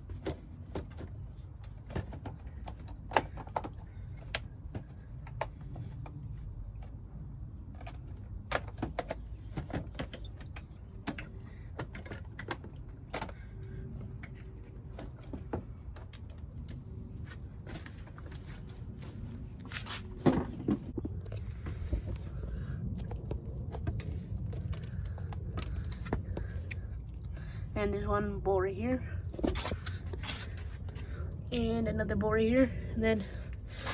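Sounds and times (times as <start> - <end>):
steady low rumble: 10.4 - 33.9.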